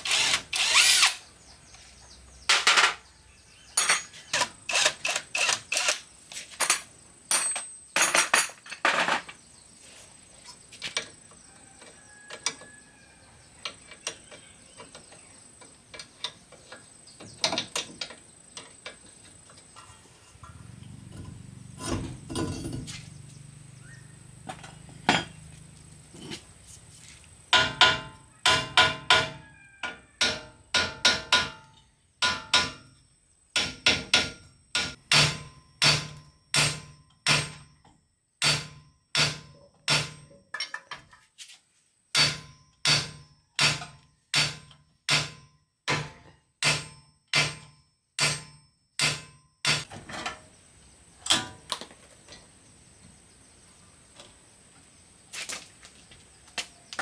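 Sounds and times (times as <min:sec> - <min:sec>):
hammer striking metal: 0:33.6 - 0:37.7, 0:42.2 - 0:49.9.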